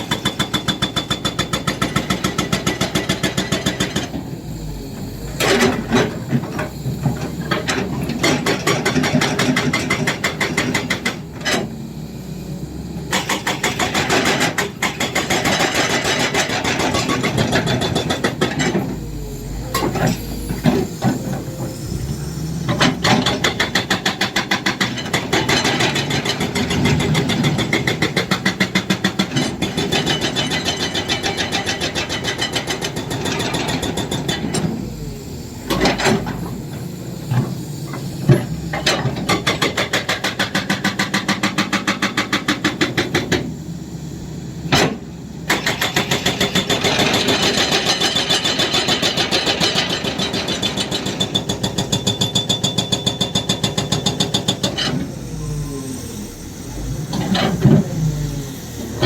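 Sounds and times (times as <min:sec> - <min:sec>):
diesel engine running: 0:03.5 - 0:41.5, 0:53.8 - 0:59.0
hydraulic breaker hammering: 0:13.1 - 0:34.8, 0:38.3 - 0:43.5, 0:44.7 - 0:55.2.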